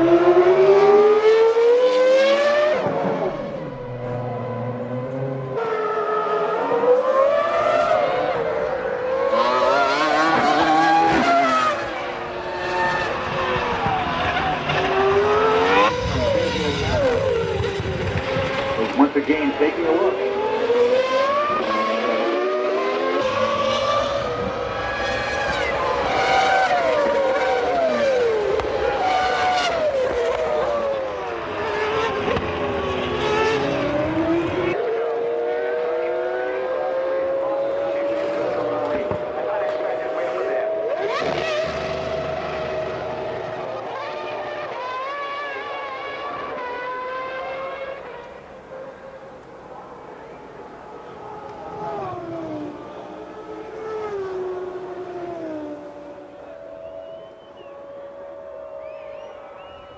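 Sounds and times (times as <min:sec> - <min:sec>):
racing car engines revving: 0:00.0 - 0:59.9.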